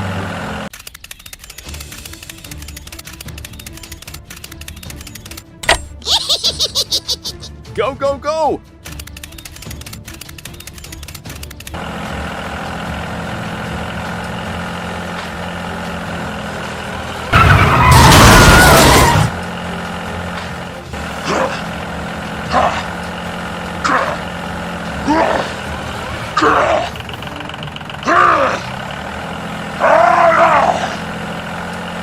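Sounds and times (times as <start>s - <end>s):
heavy vehicle engine running: 0.0s - 0.8s, 10.2s - 32.0s.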